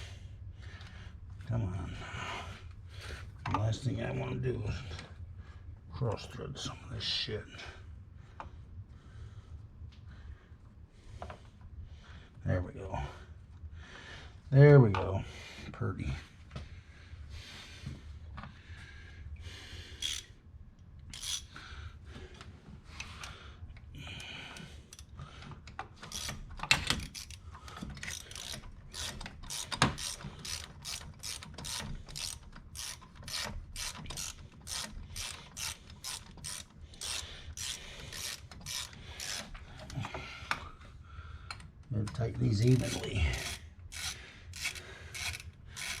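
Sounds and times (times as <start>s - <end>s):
socket ratchet clicking: 20.0s - 20.3s, 21.1s - 21.6s, 26.0s - 39.6s, 42.7s - 46.0s.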